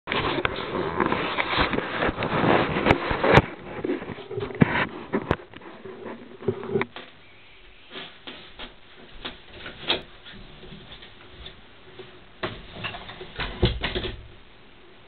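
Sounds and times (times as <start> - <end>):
handling noise on microphone: 0.1 - 14.4
sharp clicks and knocks: 9.2 - 14.4.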